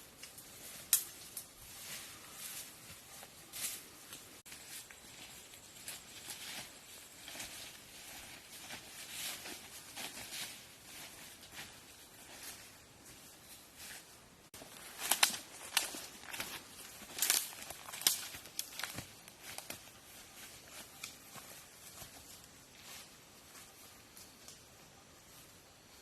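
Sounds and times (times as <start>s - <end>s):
soft rustling and crunching: 0.1s - 25.9s
sharp crackles: 14.6s - 19.9s.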